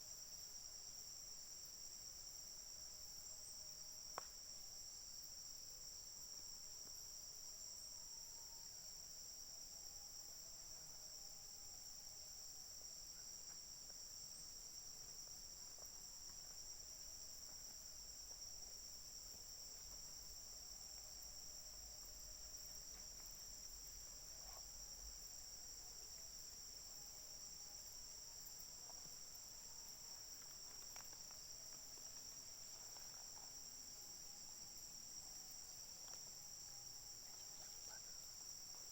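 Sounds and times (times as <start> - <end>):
insects trilling: 14.2 - 38.9.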